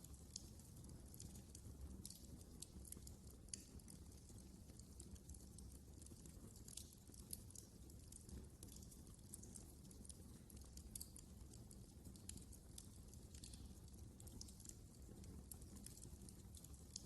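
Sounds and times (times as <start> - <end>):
wood fire crackling: 0.0 - 17.0.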